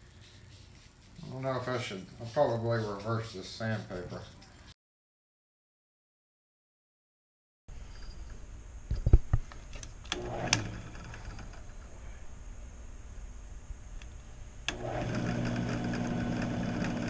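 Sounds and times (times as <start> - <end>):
drill press motor running: 10.0 - 11.7, 14.6 - 17.0.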